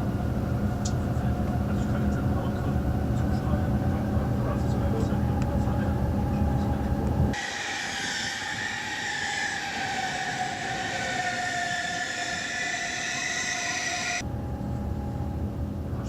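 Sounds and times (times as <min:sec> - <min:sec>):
hiss: 0:07.4 - 0:14.2
train wheels squealing: 0:07.4 - 0:15.4.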